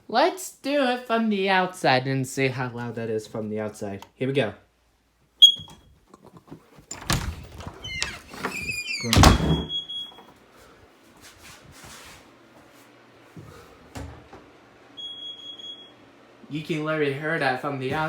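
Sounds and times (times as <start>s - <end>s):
smoke alarm high beep: 5.4s - 5.7s, 15.0s - 15.9s
door shutting with heavy thud: 6.9s - 9.8s
door squeaking open: 6.9s - 10.2s.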